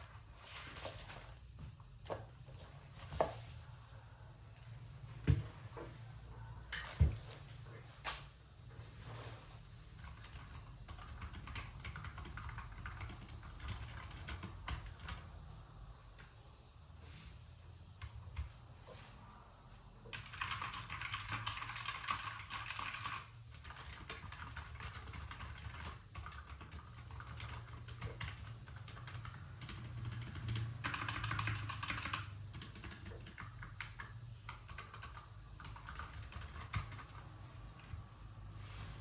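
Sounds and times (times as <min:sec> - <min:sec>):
mechanical keyboard typing: 0:10.0 - 0:15.3, 0:20.1 - 0:38.0.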